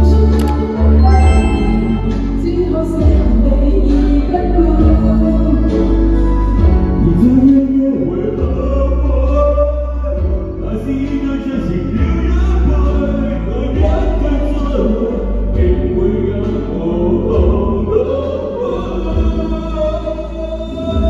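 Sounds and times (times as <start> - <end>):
live band music with singer: 0.0 - 21.0.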